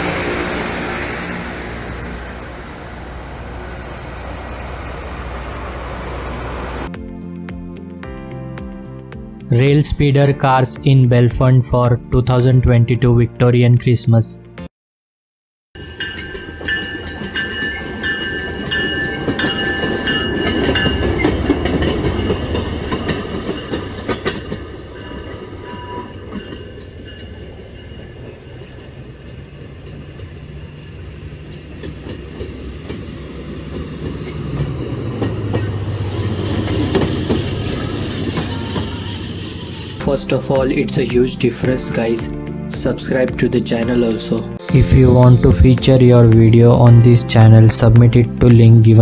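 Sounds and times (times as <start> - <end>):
small engines humming: 0.0 - 6.9, 30.3 - 40.0
wheels clattering over rails: 0.0 - 6.9, 16.0 - 40.0.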